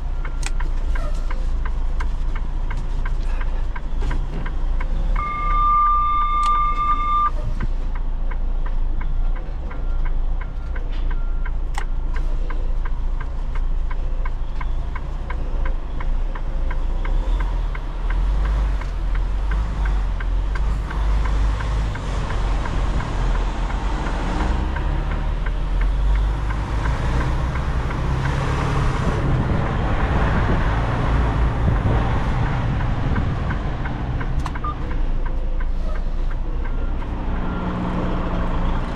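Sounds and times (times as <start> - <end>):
electronic beep tone: 5.2 - 7.4
diesel truck engine running: 6.8 - 38.9.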